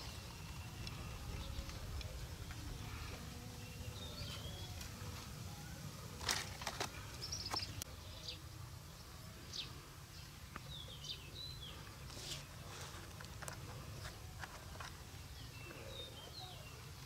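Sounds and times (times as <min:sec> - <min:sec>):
steady low rumble: 0:00.0 - 0:06.1
small birds chirping: 0:00.0 - 0:17.0.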